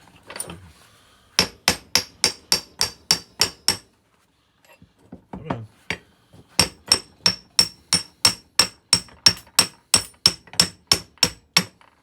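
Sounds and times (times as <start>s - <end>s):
hammer striking metal: 1.4s - 3.9s, 6.6s - 11.8s.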